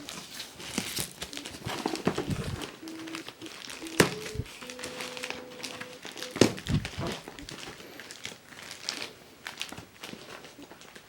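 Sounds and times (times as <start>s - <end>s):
packaging crinkling: 0.0s - 11.0s.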